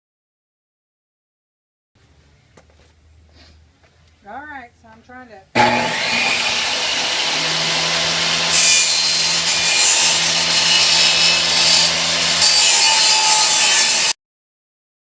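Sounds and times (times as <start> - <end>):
table saw cutting wood: 5.6 - 14.2.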